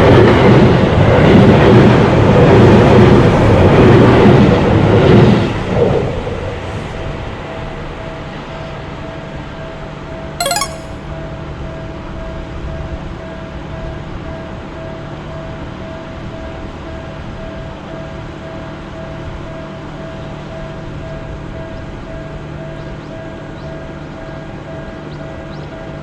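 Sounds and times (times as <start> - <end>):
sharp high-pitched blip: 10.4 - 10.9.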